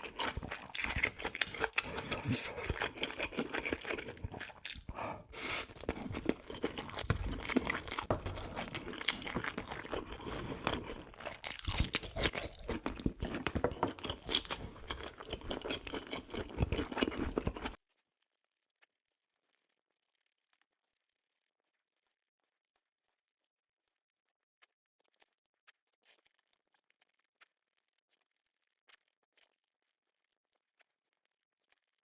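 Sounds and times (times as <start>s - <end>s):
person chewing and crunching food: 0.0s - 17.8s.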